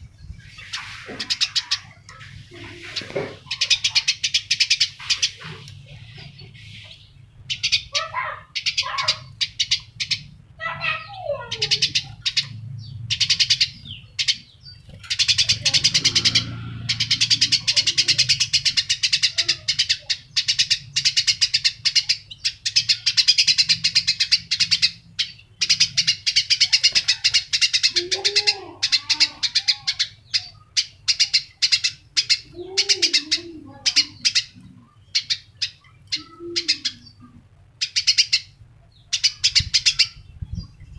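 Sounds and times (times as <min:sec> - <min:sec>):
small bird chirping: 0:00.2 - 0:40.9
lower rising-and-falling bird calls: 0:15.2 - 0:40.7.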